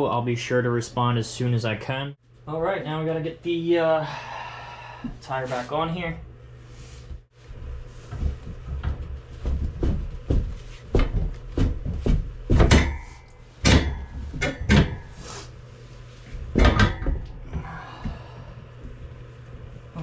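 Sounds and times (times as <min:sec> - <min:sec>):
wheel and tools knocking on workbench: 0:08.1 - 0:15.1.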